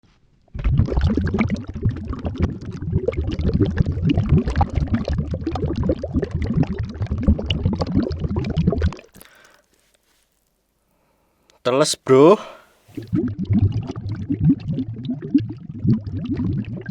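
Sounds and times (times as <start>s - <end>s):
bubbling through a straw in water: 0.4s - 9.4s, 13.0s - 16.9s.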